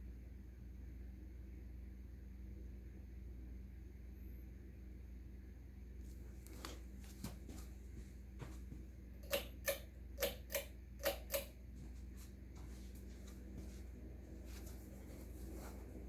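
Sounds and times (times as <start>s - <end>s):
ceiling fan humming: 0.0s - 16.0s
sharp clicks: 9.2s - 11.6s.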